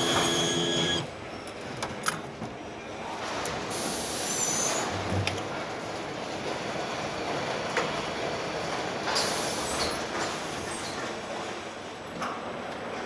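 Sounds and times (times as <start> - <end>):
industrial machinery din: 0.0 - 1.1.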